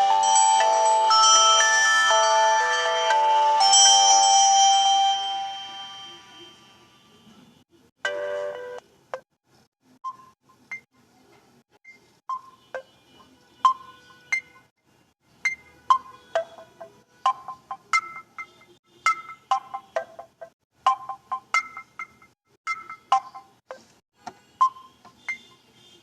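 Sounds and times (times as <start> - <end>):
chime chord: 0.0 - 6.9.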